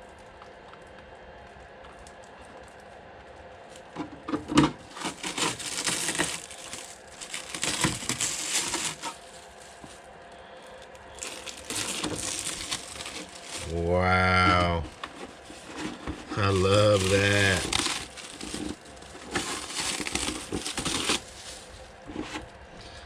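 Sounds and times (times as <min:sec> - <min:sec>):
plastic packaging crinkling: 0:01.9 - 0:22.6.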